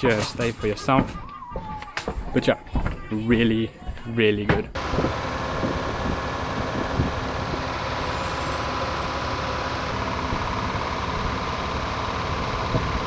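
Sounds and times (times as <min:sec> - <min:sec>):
boat engine droning: 0:04.8 - 0:13.0.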